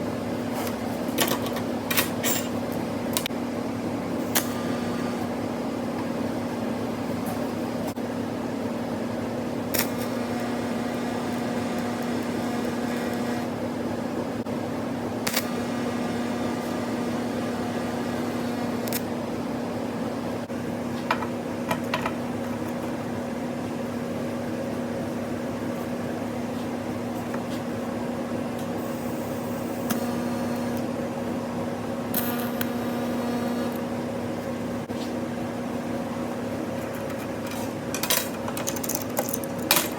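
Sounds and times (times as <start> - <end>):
machine hum: 4.2 - 7.0, 9.7 - 20.5, 28.8 - 34.9.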